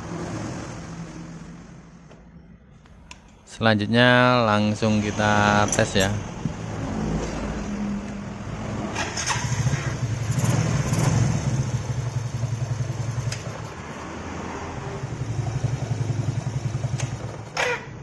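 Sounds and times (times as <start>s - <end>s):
motorcycle engine running: 6.2s - 17.6s.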